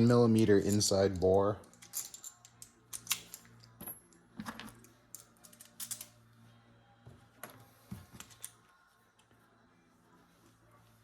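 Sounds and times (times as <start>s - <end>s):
small metal parts clicking: 0.4s - 6.2s.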